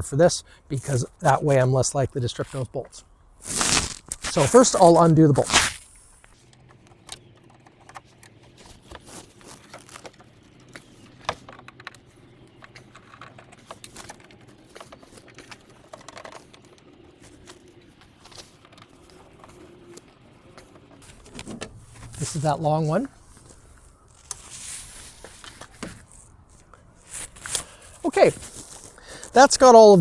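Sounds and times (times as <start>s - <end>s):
tool and bolts clicking: 6.3s - 21.6s.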